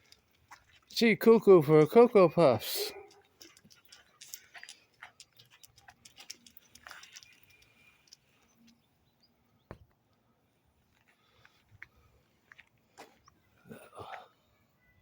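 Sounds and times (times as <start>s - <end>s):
faint scattered clicks: 2.9s - 9.2s.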